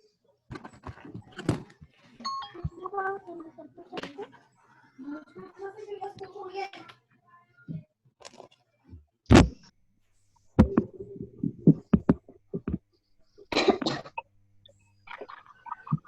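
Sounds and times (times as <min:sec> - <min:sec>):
person coughing: 0:13.5 - 0:14.2.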